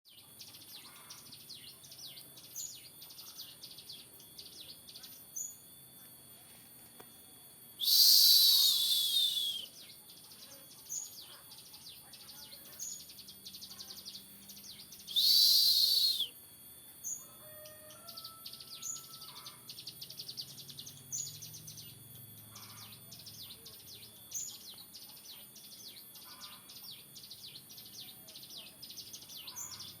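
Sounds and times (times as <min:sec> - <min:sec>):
songbird chirping: 0:00.1 - 0:30.0
bird harsh falling call: 0:07.8 - 0:09.6, 0:15.2 - 0:16.3.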